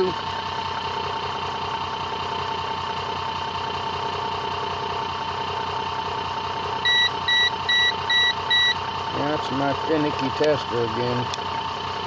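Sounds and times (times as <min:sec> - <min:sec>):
tester beeping: 0:06.9 - 0:08.8.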